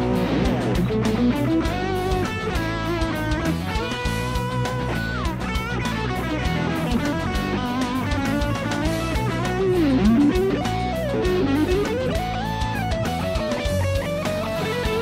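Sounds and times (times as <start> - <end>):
electric guitar lead with bends: 0.0 - 15.0.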